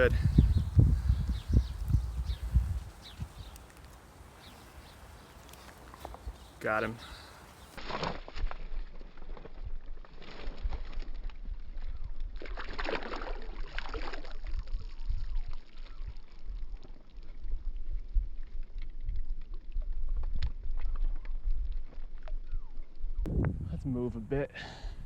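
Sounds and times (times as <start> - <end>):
water splashing and sloshing: 7.7 - 17.4
steady low rumble: 23.2 - 25.0.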